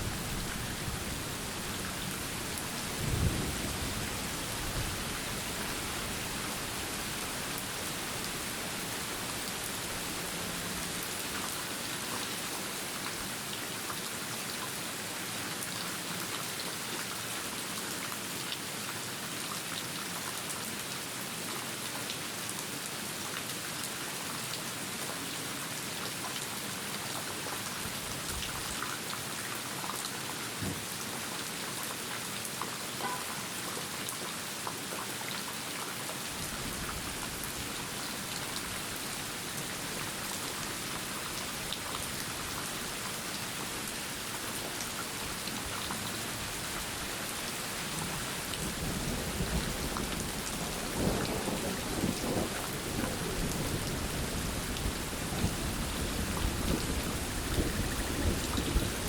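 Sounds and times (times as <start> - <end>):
steady rainfall: 0.0 - 59.0
low rumble of thunder: 3.0 - 5.0, 48.6 - 59.0.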